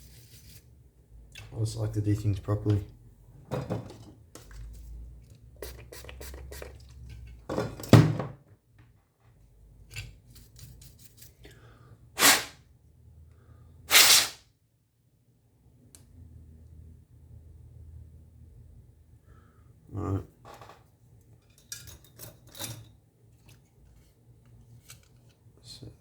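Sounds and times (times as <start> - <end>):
spray can hissing: 12.2 - 12.6, 13.9 - 14.4.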